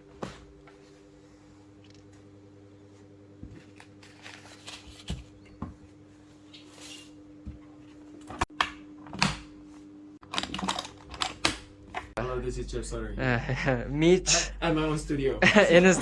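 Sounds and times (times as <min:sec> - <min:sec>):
low electrical hum: 0:00.0 - 0:16.0.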